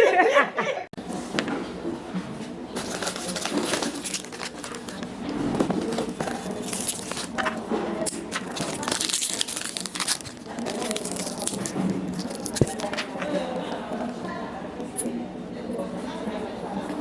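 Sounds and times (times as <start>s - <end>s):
crinkling and rustling: 2.7s - 13.4s.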